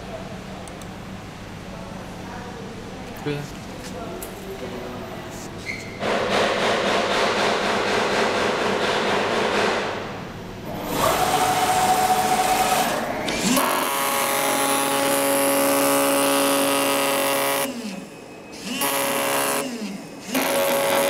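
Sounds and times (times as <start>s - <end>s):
cutting machine whining: 10.7s - 21.0s.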